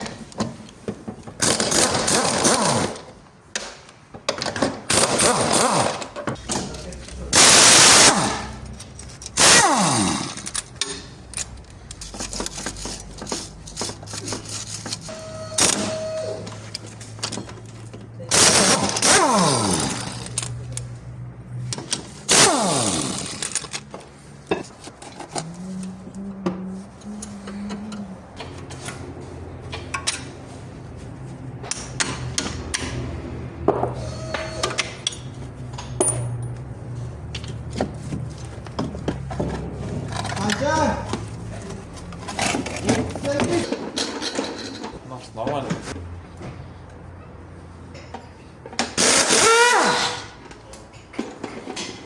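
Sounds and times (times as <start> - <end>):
metal tools clinking on metal: 6.4 - 20.8, 40.0 - 45.0.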